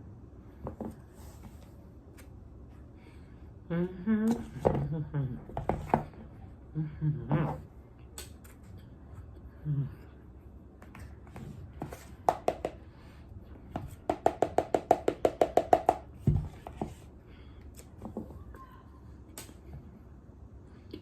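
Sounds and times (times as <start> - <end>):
person humming mm: 3.7 - 5.6, 6.7 - 7.7, 9.6 - 10.2.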